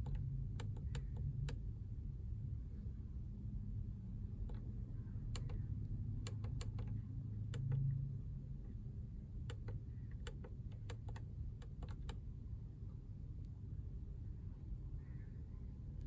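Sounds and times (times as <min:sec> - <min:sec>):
fingertips tapping a screen: 0:00.0 - 0:01.6, 0:05.3 - 0:07.9, 0:09.5 - 0:12.2
low car cabin hum: 0:00.0 - 0:14.8.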